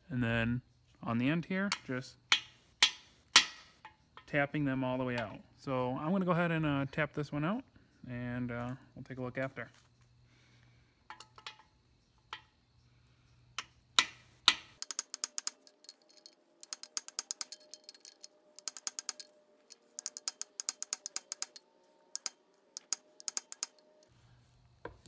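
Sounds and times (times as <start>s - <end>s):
metallic tapping on socket extension: 1.7s - 4.3s, 13.6s - 19.3s, 20.0s - 24.1s.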